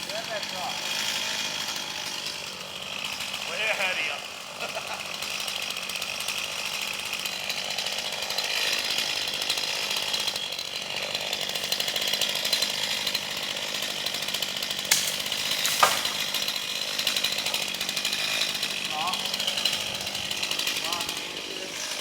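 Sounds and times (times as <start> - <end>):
chainsaw running: 0.0 - 22.0
sharp knocks: 14.9 - 16.4.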